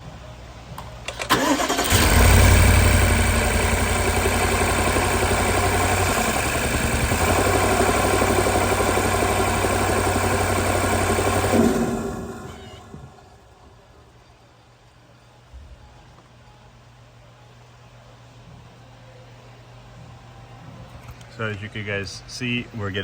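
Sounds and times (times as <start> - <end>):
engine cranking and idling: 1.0 - 13.4.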